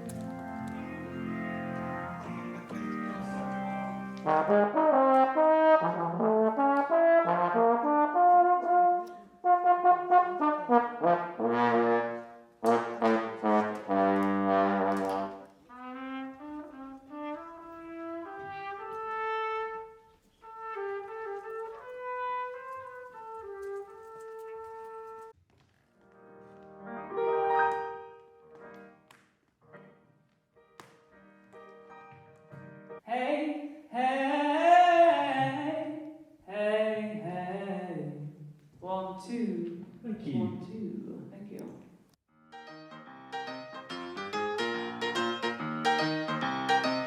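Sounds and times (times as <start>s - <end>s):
brass instruments playing: 0.0s - 25.4s, 26.8s - 29.0s, 42.5s - 47.0s.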